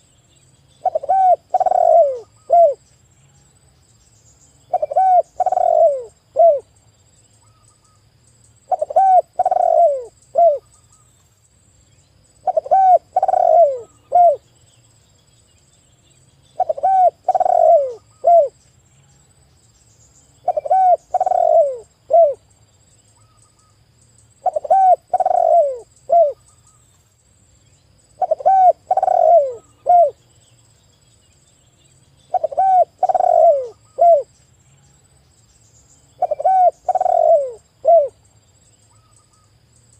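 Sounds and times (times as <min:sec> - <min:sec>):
dove cooing: 0:00.8 - 0:02.8, 0:04.7 - 0:06.7, 0:08.7 - 0:10.7, 0:12.4 - 0:14.5, 0:16.6 - 0:18.6, 0:20.4 - 0:22.4, 0:24.4 - 0:26.4, 0:28.2 - 0:30.2, 0:32.3 - 0:34.3, 0:36.2 - 0:38.2.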